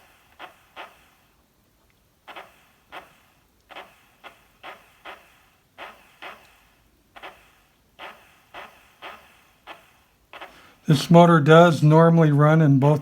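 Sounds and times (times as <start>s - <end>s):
small electric motor whirring: 0.0s - 1.5s, 2.2s - 10.9s.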